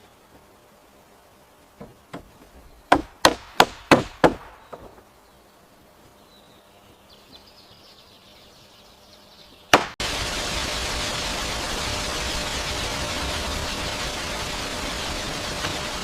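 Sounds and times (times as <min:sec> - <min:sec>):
tool striking wood: 0:02.9 - 0:05.0, 0:09.7 - 0:10.0.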